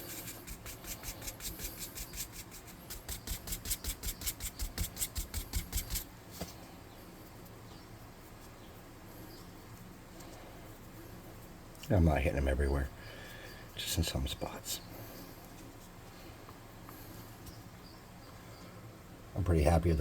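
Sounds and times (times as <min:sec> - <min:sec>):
paint brush scrubbing: 0:00.0 - 0:06.1.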